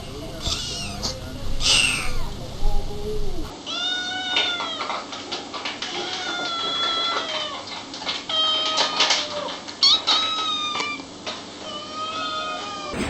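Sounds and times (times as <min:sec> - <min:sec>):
kittens meowing: 0:00.1 - 0:04.9.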